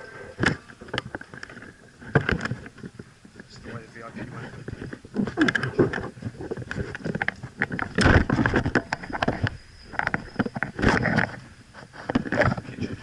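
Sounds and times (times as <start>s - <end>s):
rustling thump: 4.4s - 11.4s.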